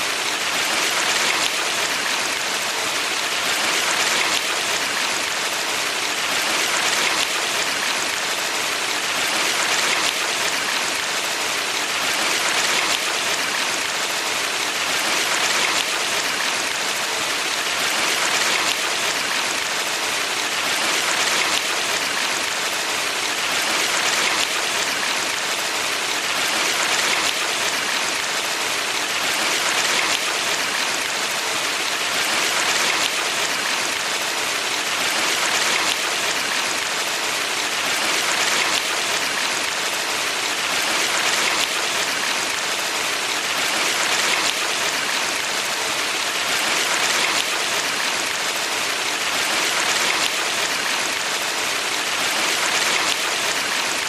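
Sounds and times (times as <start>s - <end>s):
stream water rushing: 0.0s - 54.0s.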